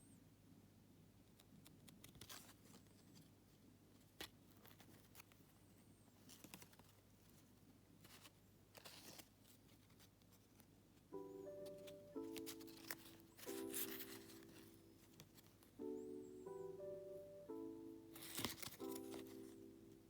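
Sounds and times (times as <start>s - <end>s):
packaging rustling and crinkling: 11.6s - 15.7s, 18.2s - 19.6s.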